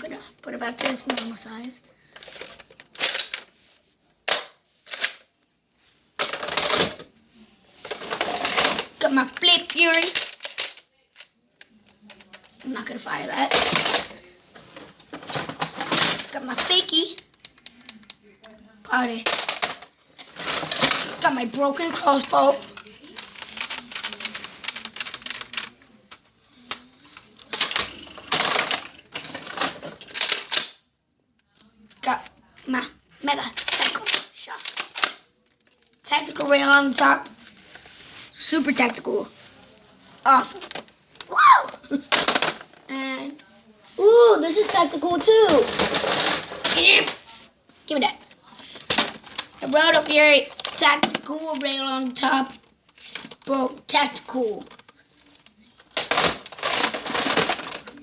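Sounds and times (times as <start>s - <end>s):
plastic clattering and rattling: 0.6s - 3.6s, 4.2s - 5.3s, 6.2s - 7.1s, 7.8s - 30.8s, 31.5s - 37.4s, 40.3s - 43.5s, 44.2s - 47.3s, 47.9s - 58.0s
plastic clacks and scrapes: 6.2s - 7.1s, 7.8s - 30.8s, 33.4s - 37.9s, 40.3s - 43.5s, 44.4s - 47.3s, 47.9s - 58.0s.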